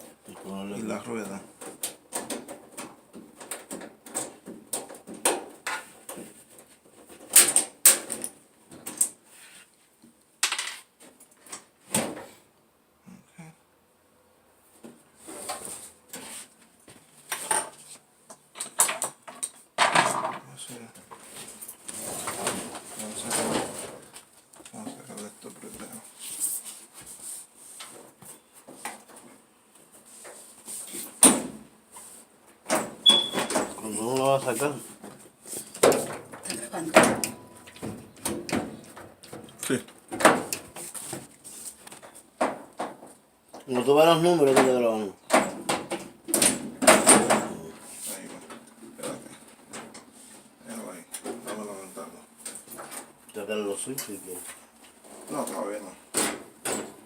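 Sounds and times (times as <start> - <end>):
clicks and knocks of dryer parts: 1.2 - 9.2, 35.0 - 43.7, 44.5 - 47.6.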